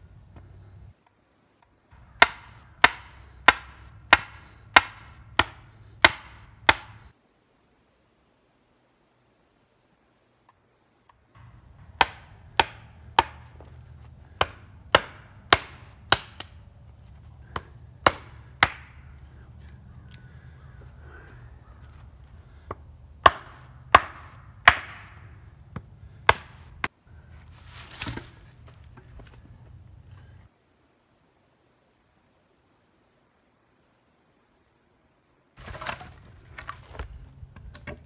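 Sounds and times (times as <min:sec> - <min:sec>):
tool chopping wood: 0:02.0 - 0:07.1, 0:11.4 - 0:16.6, 0:17.4 - 0:19.2, 0:22.7 - 0:26.9
low hum: 0:11.4 - 0:30.5.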